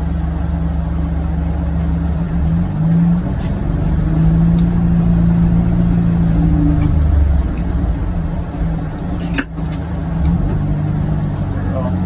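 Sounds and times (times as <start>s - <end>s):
utility vehicle engine running: 0.0s - 12.0s.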